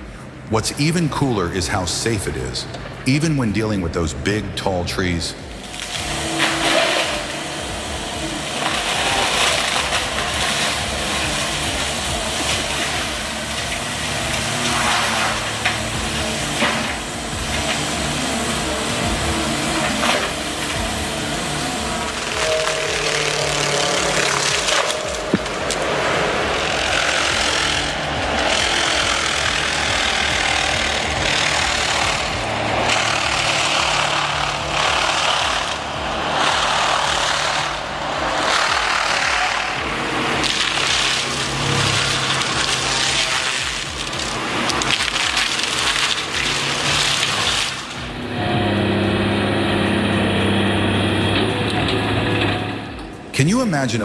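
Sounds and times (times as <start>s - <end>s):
wood being shredded: 0.0s - 53.9s
excavator engine under load: 0.0s - 54.0s
loud rushing grinding noise: 0.0s - 54.0s
sharp wood cracks: 5.6s - 48.2s.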